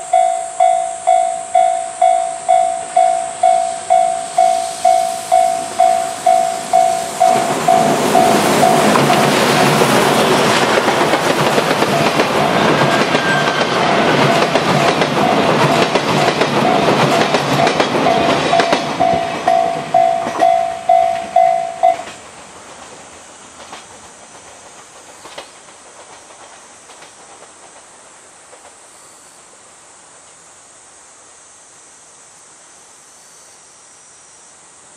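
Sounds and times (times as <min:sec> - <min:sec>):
level-crossing warning bell: 0:00.0 - 0:22.2
steam train clattering over rail joints: 0:02.5 - 0:28.8.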